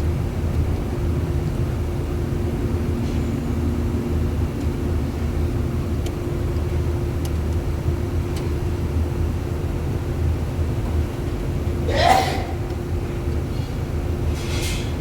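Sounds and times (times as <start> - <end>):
air conditioner humming: 9.4 - 15.0.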